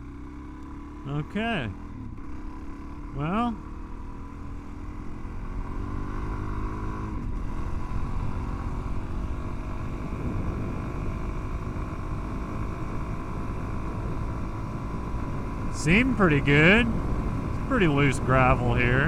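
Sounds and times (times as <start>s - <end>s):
dirt bike engine running: 0.0s - 19.0s
wind: 0.0s - 19.0s
tires rumbling on gravel: 9.0s - 19.0s.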